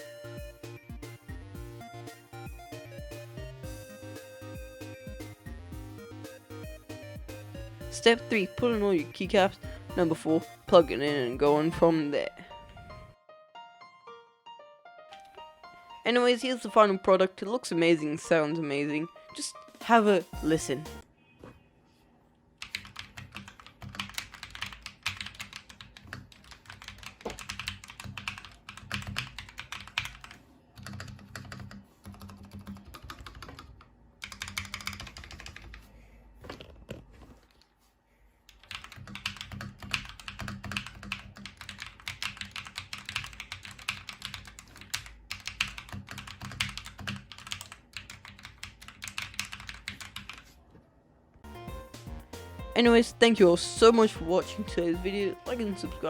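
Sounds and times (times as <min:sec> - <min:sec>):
mechanical keyboard typing: 0:22.6 - 0:35.8, 0:38.5 - 0:50.4.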